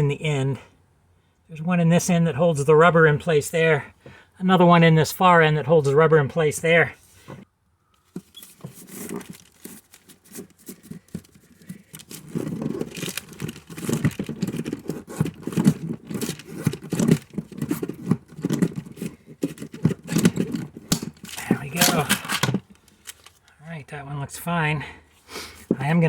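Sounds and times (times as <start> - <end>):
metal clicks and scrapes: 8.0 - 23.5.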